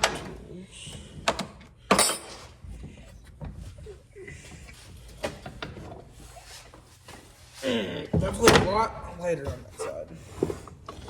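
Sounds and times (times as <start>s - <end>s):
hard parts knocking and clattering: 0.0s - 0.4s, 1.1s - 6.2s.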